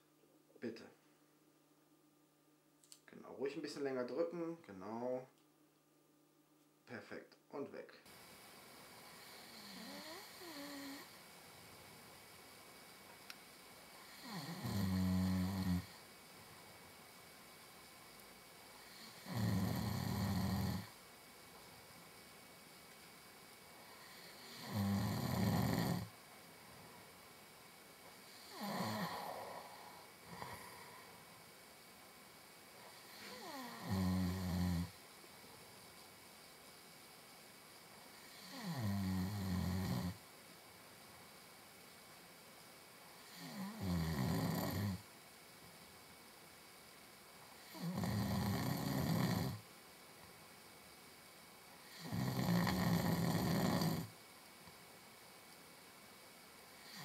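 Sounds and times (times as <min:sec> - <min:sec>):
man snoring: 0:09.1 - 0:11.2, 0:14.0 - 0:16.0, 0:18.8 - 0:21.0, 0:23.8 - 0:26.1, 0:28.3 - 0:31.0, 0:32.9 - 0:35.0, 0:38.2 - 0:40.2, 0:43.2 - 0:45.0, 0:47.6 - 0:49.6, 0:51.8 - 0:54.1, 0:56.8 - 0:57.0.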